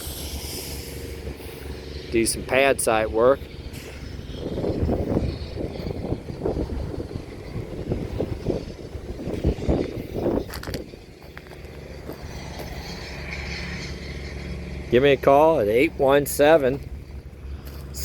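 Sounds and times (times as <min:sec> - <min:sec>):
diesel engine rumbling: 0:00.0 - 0:18.0.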